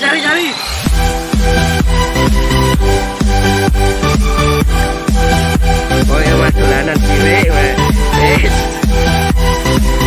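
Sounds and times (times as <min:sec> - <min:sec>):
electronic dance music: 0:00.0 - 0:10.0.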